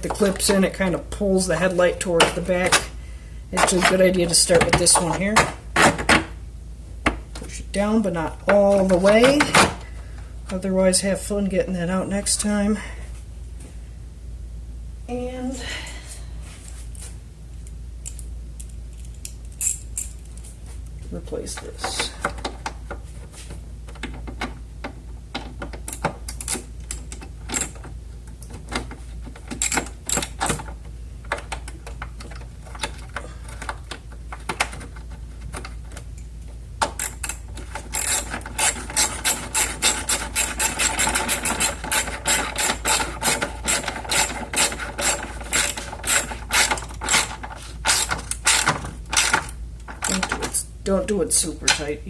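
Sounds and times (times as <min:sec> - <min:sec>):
ratchet wrench clicking: 0:37.0 - 0:47.3.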